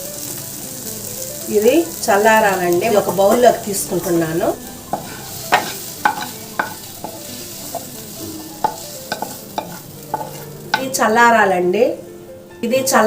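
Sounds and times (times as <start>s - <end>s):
metal spoon scraping a pan: 2.9s - 11.0s.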